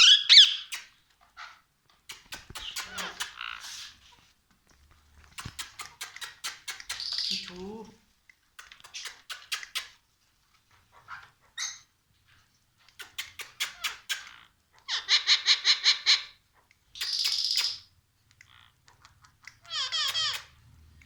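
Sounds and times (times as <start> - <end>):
parrot chattering call: 0.0 - 0.8, 19.6 - 20.6
parrot squawking: 0.0 - 1.6, 2.4 - 3.9, 13.0 - 16.4, 18.5 - 20.6.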